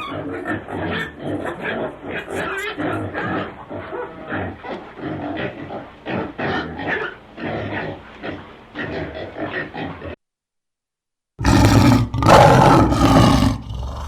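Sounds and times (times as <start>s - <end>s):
domestic animal calling: 0.0s - 10.2s.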